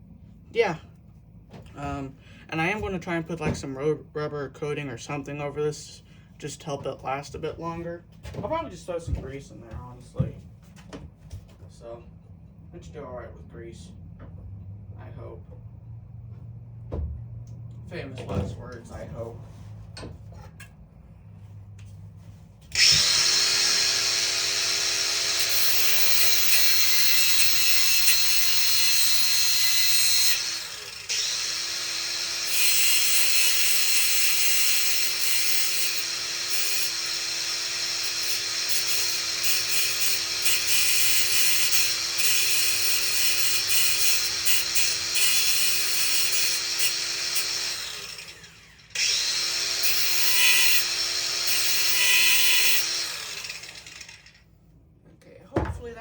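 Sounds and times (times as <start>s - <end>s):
high-speed power tool whine: 22.7s - 54.4s.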